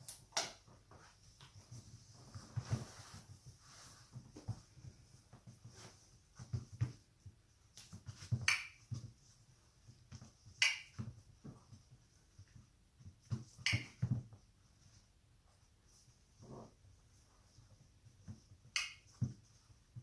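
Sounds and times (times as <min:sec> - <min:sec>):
shuffling: 0:00.7 - 0:08.4.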